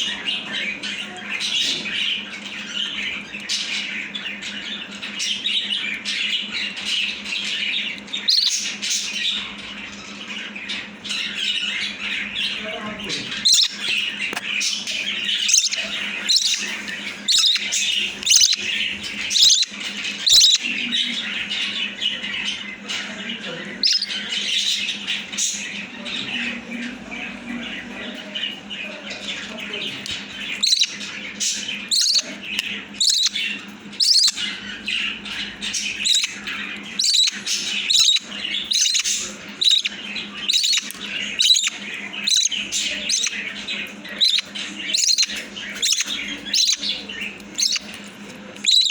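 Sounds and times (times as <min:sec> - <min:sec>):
budgie chick begging chirps: 0:08.0 - 0:09.1, 0:11.1 - 0:22.6, 0:23.8 - 0:25.6, 0:30.0 - 0:48.9.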